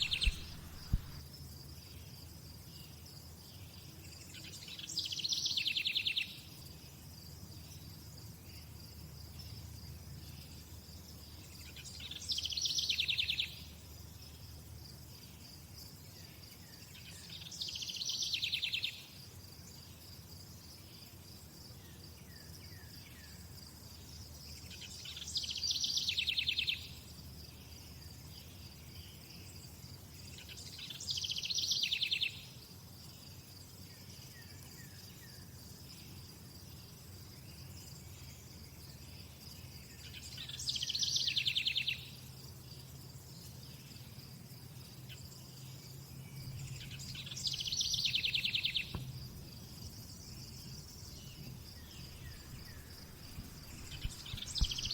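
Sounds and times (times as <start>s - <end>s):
crickets trilling: 0.0s - 2.3s, 18.4s - 54.9s
loud pulsed insect trills: 37.8s - 54.9s.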